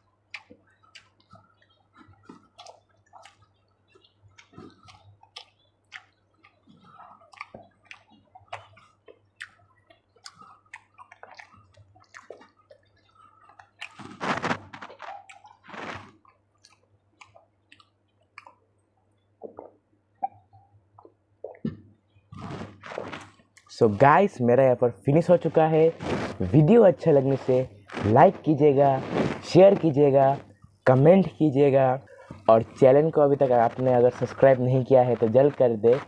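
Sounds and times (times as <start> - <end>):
close chewing mouth sounds: 0.0 - 23.7.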